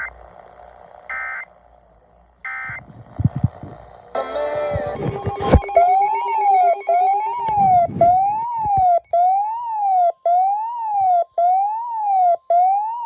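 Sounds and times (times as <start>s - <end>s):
faint steady high tone: 4.1s - 9.6s
electronic siren wailing: 4.2s - 13.0s.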